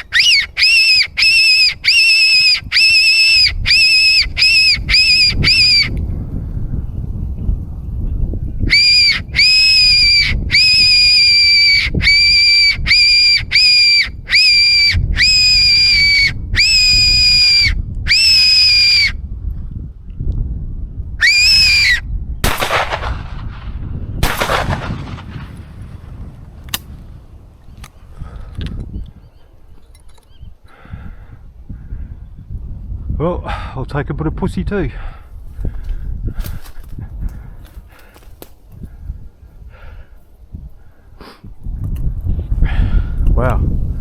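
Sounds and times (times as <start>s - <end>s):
predator call whistle squealing: 0.0s - 5.9s, 8.7s - 19.2s, 21.2s - 22.0s.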